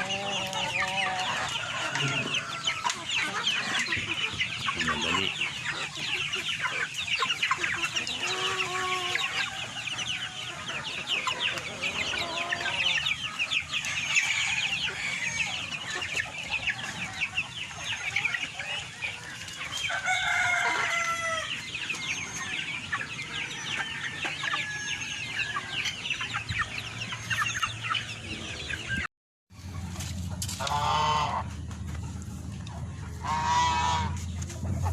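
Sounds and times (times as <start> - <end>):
chickens clucking: 0.0 - 34.9
rooster crowing: 1.0 - 2.9, 13.9 - 15.7, 19.9 - 21.5.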